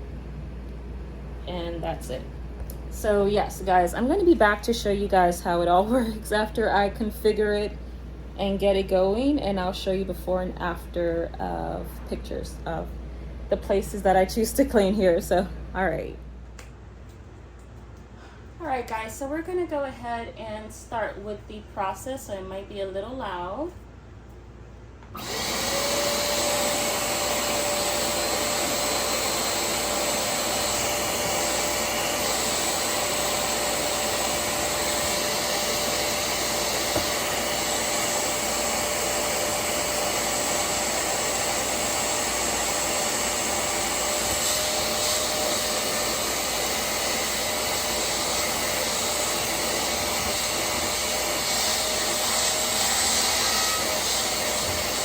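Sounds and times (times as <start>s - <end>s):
spot cleaner suction motor whining: 25.2s - 55.0s.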